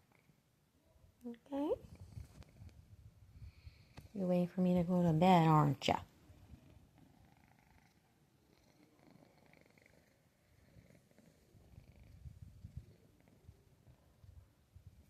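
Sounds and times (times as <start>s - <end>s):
cat purring: 1.6s - 4.3s, 5.8s - 15.0s.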